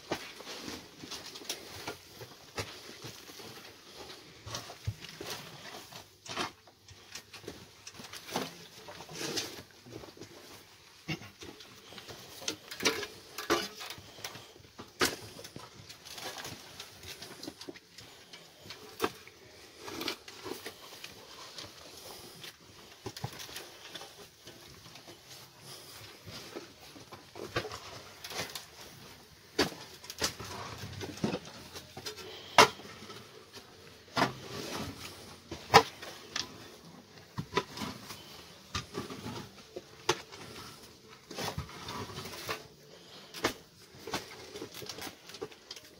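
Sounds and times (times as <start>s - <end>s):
shovel knocking and scraping manure: 11.1s - 22.3s, 29.5s - 33.4s.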